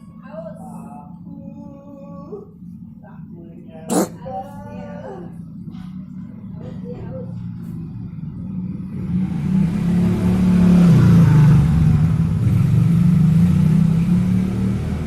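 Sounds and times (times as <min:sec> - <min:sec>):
vehicle engine running: 0:07.3 - 0:15.0.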